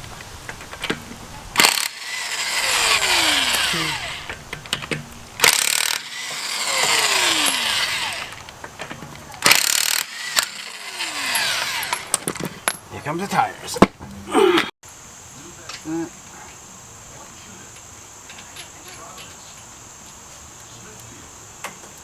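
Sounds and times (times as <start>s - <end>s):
power tool whining: 1.6s - 8.5s, 9.2s - 12.4s.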